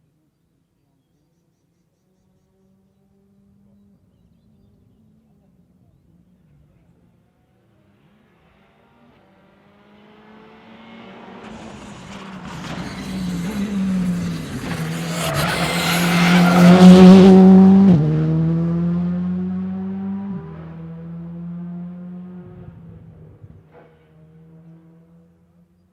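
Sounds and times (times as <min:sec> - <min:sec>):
rally car engine passing: 0:07.9 - 0:25.8.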